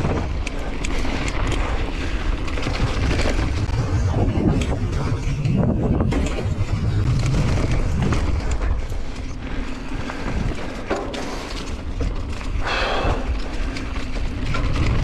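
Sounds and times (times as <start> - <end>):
bike rattling over rough ground: 0.0 - 15.0
wind buffeting the microphone: 2.0 - 9.2.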